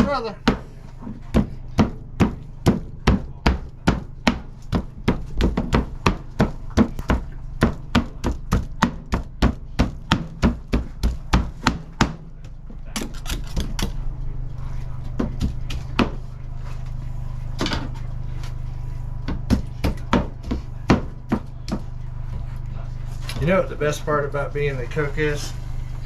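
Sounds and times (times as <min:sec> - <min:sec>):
knife chopping on cutting board: 0:19.3 - 0:21.9.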